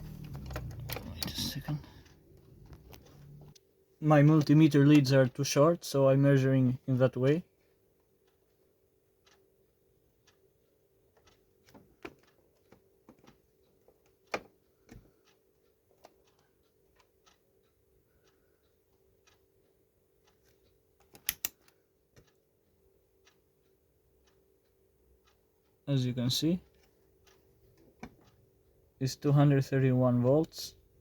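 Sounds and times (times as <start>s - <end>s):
test probes clicking and tapping: 0.0s - 3.7s, 11.1s - 18.4s, 20.2s - 22.5s.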